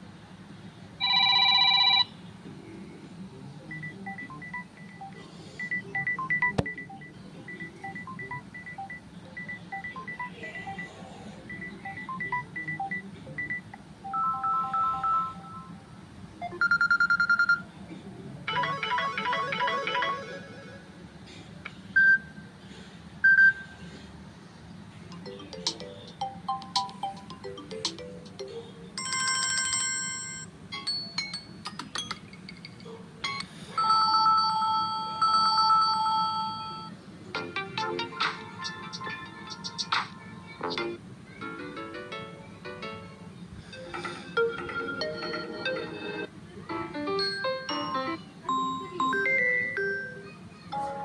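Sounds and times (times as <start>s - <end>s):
fast trill of beeps: 3.7s - 10.9s
electronic ringtone melodies: 3.8s - 10.9s, 11.5s - 15.8s, 18.5s - 20.4s, 25.2s - 31.6s, 47.0s - 51.0s
plucked-sounding ringtone melody: 14.1s - 15.8s, 18.5s - 20.3s, 25.2s - 32.2s, 47.0s - 50.3s.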